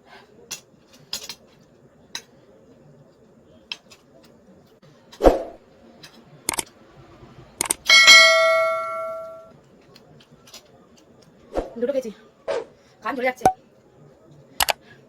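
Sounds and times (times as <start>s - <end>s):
tableware clicks: 7.7s - 9.5s.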